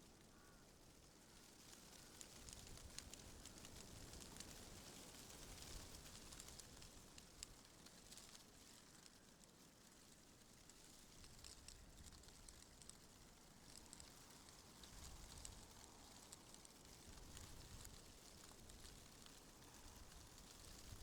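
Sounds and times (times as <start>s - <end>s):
leaves rustling in wind: 0.0s - 21.0s.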